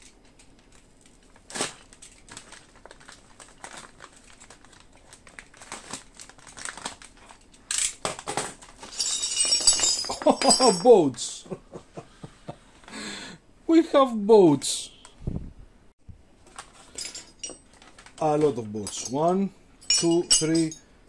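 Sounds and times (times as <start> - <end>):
plastic packaging crinkling: 0.5 - 8.9.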